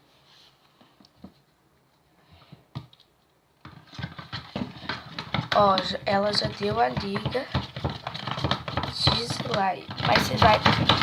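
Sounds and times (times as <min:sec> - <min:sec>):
spoon stirring slime: 0:03.6 - 0:11.0.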